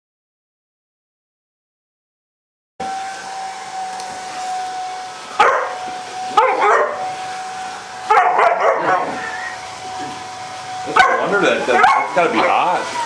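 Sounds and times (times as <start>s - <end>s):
hair dryer whining: 2.8s - 13.0s
puppy barking: 5.4s - 7.0s, 8.1s - 9.6s, 10.9s - 13.0s.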